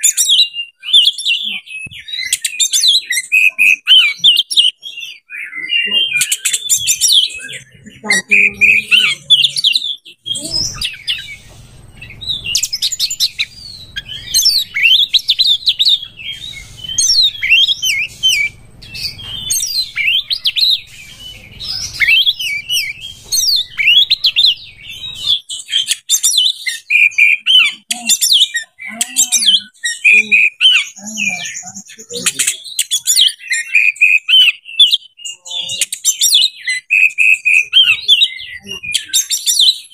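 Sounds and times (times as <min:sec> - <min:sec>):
songbird chirps whistles and trills: 0:00.0 - 0:39.9
low rumble: 0:10.4 - 0:25.3.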